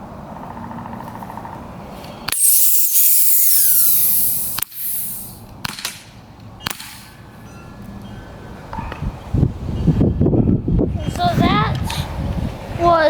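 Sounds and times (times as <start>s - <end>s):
aerosol can venting hiss: 2.3s - 5.4s
air pistol shot: 2.3s - 6.0s, 6.7s - 7.1s.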